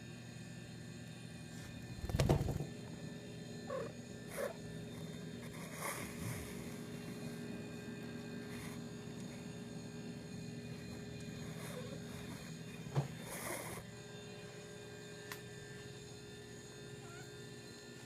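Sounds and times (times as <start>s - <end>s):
cat calling: 3.7s - 4.6s.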